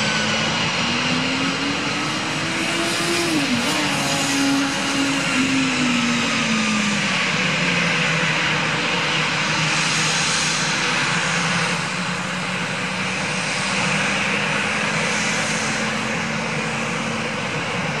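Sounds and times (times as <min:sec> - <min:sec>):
jet engine rush and whine: 0:00.0 - 0:18.0.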